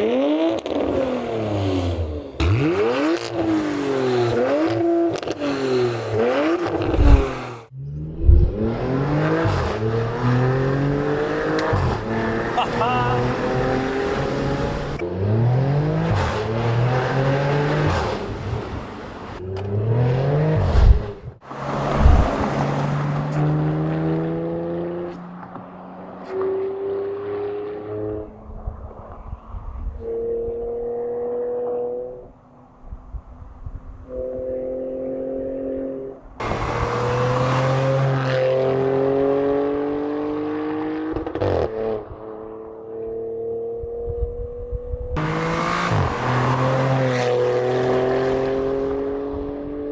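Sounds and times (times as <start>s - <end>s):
exhaust drone: 0.0s - 25.5s, 45.1s - 49.8s
car engine accelerating: 0.0s - 49.9s
exhaust burst: 5.4s - 15.0s, 20.3s - 24.5s.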